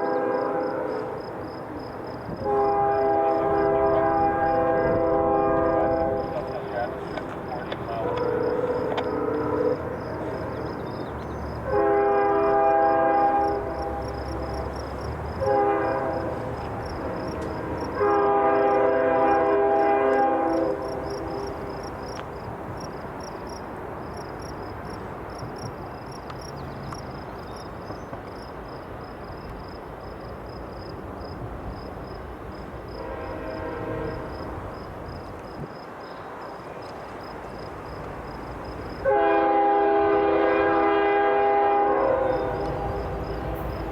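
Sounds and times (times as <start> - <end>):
locomotive air horn: 0.0 - 1.4, 2.4 - 7.1, 7.9 - 10.4, 11.6 - 14.8, 15.4 - 21.6, 33.0 - 34.5, 39.0 - 43.9
train rumble: 0.0 - 43.9.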